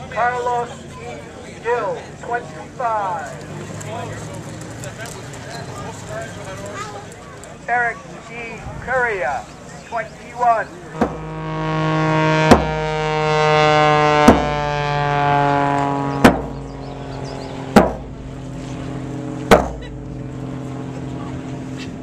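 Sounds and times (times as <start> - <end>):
propeller plane engine droning: 0.0 - 22.0
sharp strikes: 11.0 - 13.3, 14.0 - 15.0, 15.7 - 16.8, 17.7 - 18.2.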